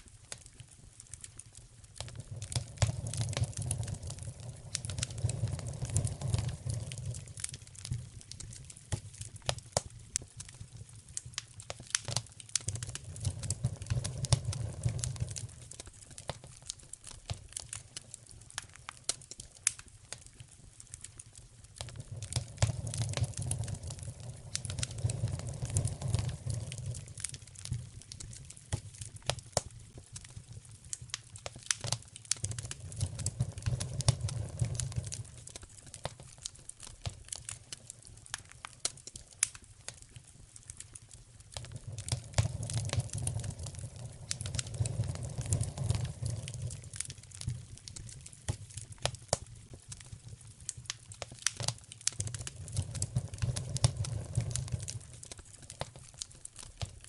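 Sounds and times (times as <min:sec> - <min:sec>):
wood fire crackling and popping: 0:00.0 - 0:57.0
low rumble: 0:02.4 - 0:08.3, 0:22.0 - 0:28.1, 0:32.6 - 0:35.5, 0:41.6 - 0:47.9.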